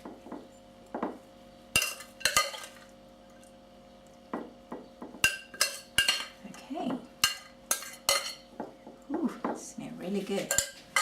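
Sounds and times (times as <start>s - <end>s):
utensil clinking on bowl: 5.2s - 6.6s, 10.4s - 11.0s.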